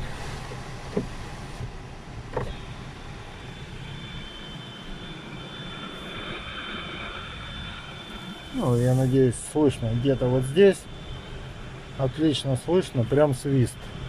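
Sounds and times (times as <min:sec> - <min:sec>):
heater blower air rush: 0:00.0 - 0:14.0
high-pitched whistle: 0:03.6 - 0:11.2.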